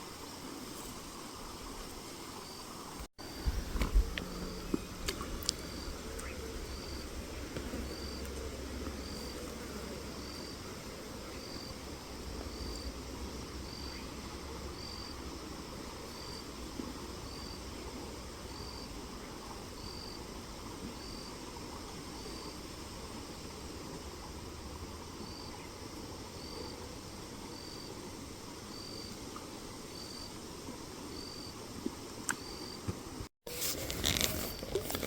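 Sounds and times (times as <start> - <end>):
insect chirping: 0.1 - 8.4, 9.0 - 16.6, 17.2 - 20.3, 21.0 - 23.6, 25.2 - 26.9, 28.7 - 29.2, 29.8 - 30.4, 32.3 - 32.9.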